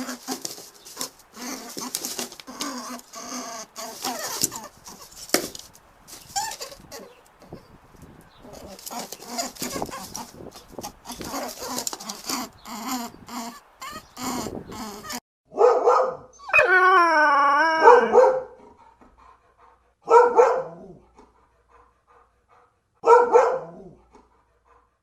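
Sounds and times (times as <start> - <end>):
dog barking: 15.5 - 16.4, 17.8 - 18.6, 20.0 - 21.0, 23.0 - 24.0
dog howling: 16.4 - 18.6.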